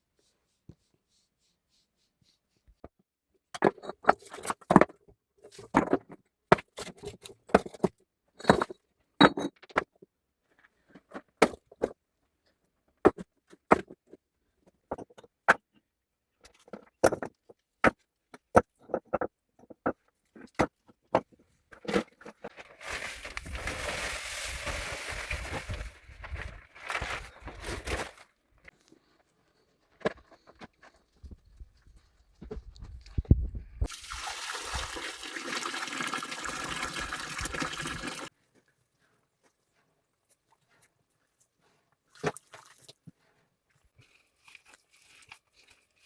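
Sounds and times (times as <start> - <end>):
hard objects knocking and clattering: 16.6 - 22.5.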